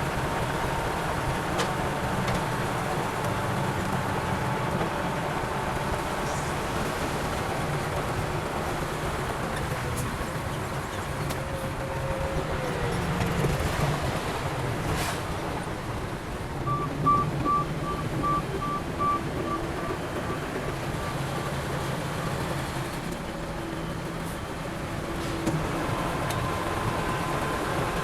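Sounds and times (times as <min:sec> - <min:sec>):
heavy machine engine running: 0:16.5 - 0:28.0
reversing alarm beeping: 0:16.6 - 0:22.5.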